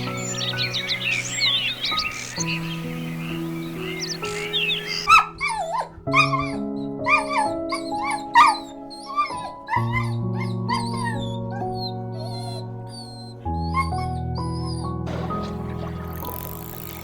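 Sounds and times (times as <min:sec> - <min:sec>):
soothing background music: 0:00.0 - 0:17.0.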